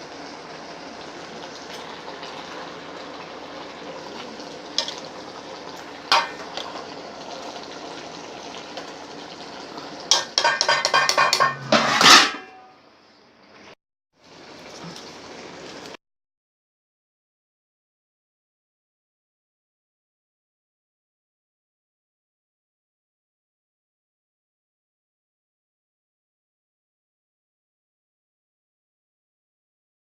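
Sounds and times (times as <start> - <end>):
food sizzling in a pan: 0.0 - 16.0
metal utensil clinking on pan: 6.1 - 6.5, 10.1 - 12.8
cookware knocking: 10.1 - 12.7.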